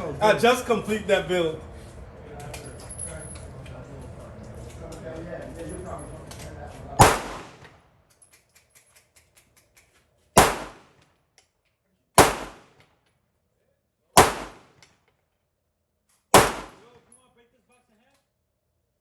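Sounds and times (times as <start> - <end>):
handgun shots: 7.0 - 7.7, 10.4 - 11.0, 12.2 - 12.8, 14.2 - 14.8, 16.4 - 16.9.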